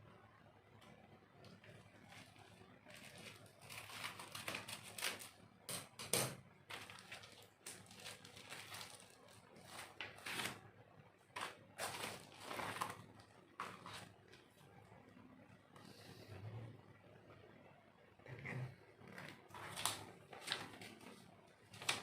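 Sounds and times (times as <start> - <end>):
packaging rustling and crinkling: 2.0 - 5.4, 6.6 - 10.6, 11.3 - 14.4, 19.5 - 22.0.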